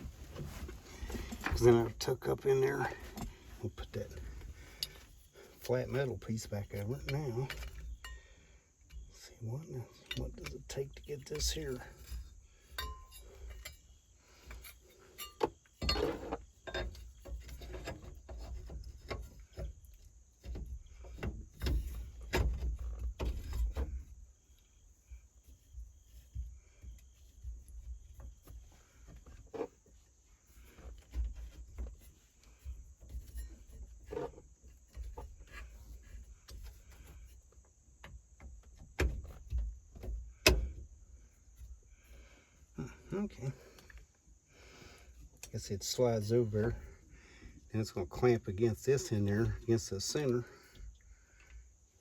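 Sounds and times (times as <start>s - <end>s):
metal parts clicking and tapping: 10.0s - 13.8s, 14.6s - 19.8s.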